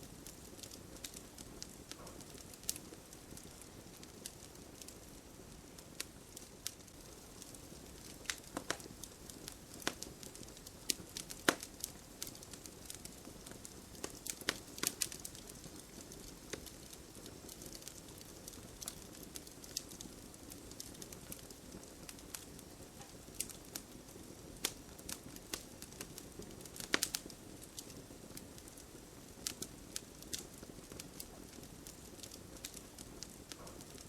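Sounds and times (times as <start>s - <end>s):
burning wood crackling and popping: 0.0s - 34.0s
campfire hissing: 0.0s - 34.0s.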